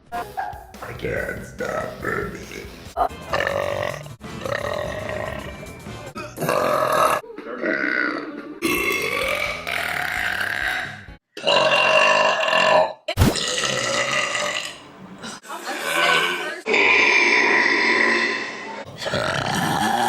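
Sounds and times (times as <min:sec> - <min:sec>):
women burping: 0:06.2 - 0:20.0.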